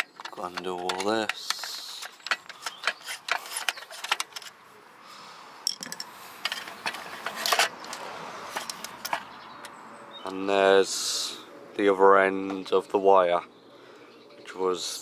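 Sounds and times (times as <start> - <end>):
metallic clicks of hand tools: 0.0 - 4.5.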